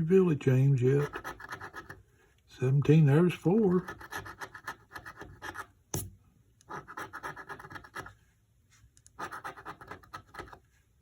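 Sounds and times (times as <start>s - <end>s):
scratch card being scratched: 0.9s - 2.0s, 3.8s - 6.1s, 6.7s - 8.2s, 9.2s - 10.6s.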